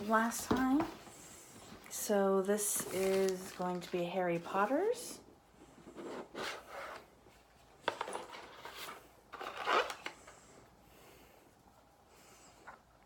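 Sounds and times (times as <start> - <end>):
packaging rustling: 2.6 - 4.1, 7.9 - 10.3.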